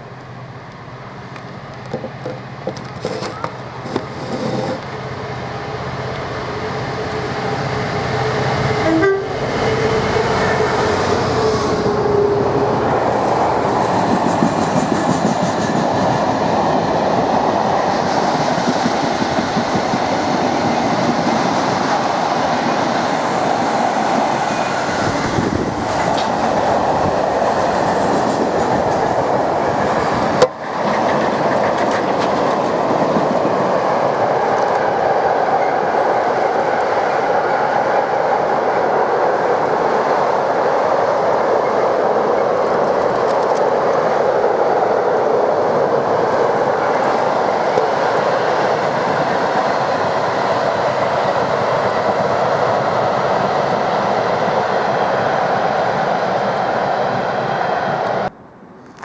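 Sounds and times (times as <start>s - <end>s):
freight train passing: 0.0s - 59.0s
train horn: 6.5s - 13.7s.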